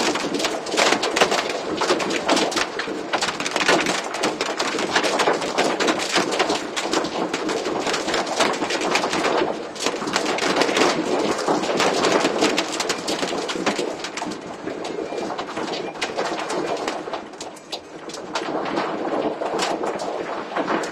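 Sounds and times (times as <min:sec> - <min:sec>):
torrential rain and hail: 0:00.0 - 0:20.9.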